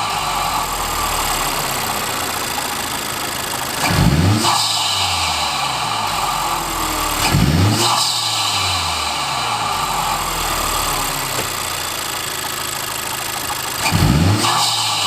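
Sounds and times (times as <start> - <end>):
car engine revving: 0.0 - 15.0
turbo spool and intake rush: 0.0 - 15.0.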